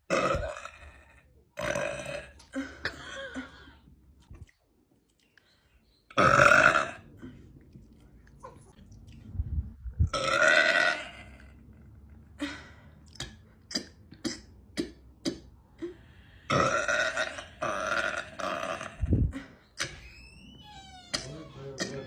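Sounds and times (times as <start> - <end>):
woman burping loudly: 0.1 - 3.9, 6.1 - 7.3, 10.1 - 11.6, 16.5 - 19.4
clicks in the throat: 13.0 - 16.0.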